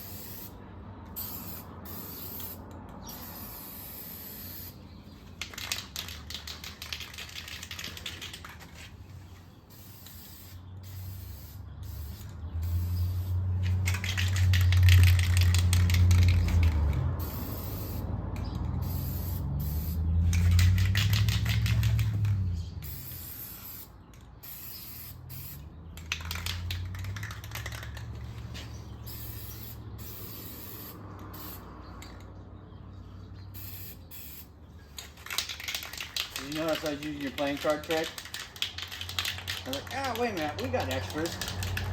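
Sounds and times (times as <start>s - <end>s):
aerosol spray can hissing: 3.2s - 4.8s, 9.7s - 14.8s, 15.5s - 18.1s, 18.8s - 22.2s, 29.1s - 31.6s.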